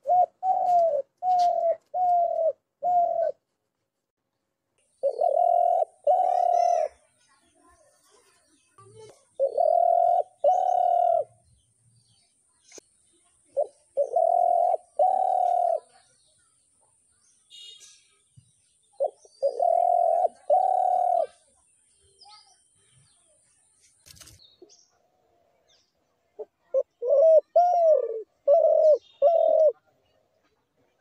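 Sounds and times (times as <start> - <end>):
dove cooing: 0.0 - 3.4, 5.0 - 7.0, 9.3 - 11.4, 13.6 - 16.0, 19.0 - 21.4, 26.4 - 29.8
small birds chirping: 0.0 - 3.5, 4.3 - 31.0.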